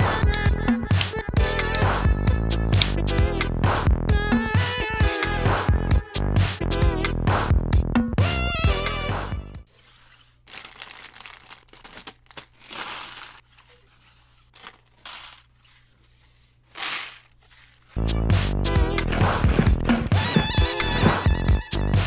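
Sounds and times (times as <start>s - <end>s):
plastic crinkling and tearing: 10.4s - 18.0s.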